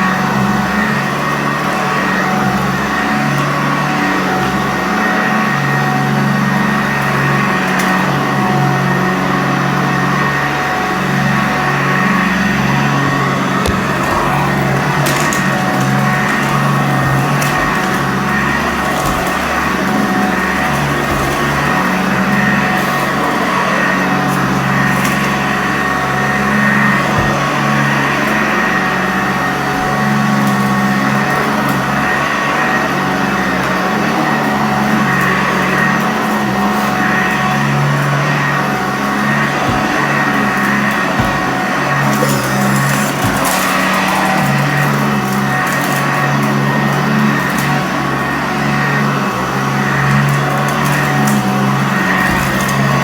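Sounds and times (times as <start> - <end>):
vacuum cleaner running: 0.0 - 53.0.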